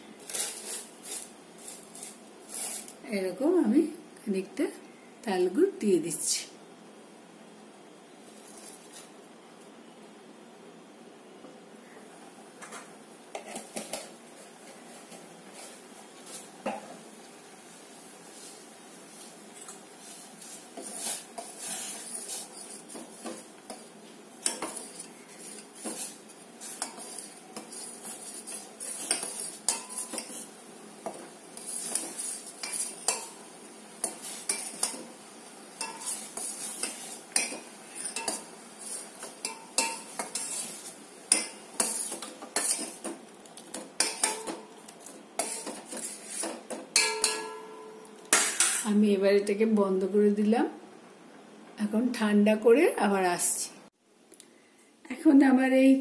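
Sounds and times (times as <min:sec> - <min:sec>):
spoon clinking and scraping pot: 0:20.8 - 0:33.4, 0:34.0 - 0:35.1, 0:35.8 - 0:48.8.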